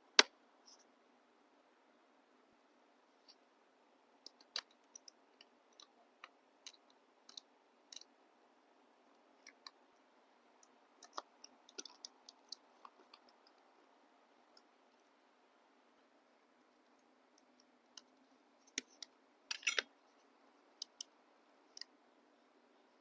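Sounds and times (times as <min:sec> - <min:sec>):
faint clicks and taps on laptop: 0:04.2 - 0:08.2, 0:09.1 - 0:10.0, 0:10.6 - 0:13.8, 0:16.8 - 0:22.0.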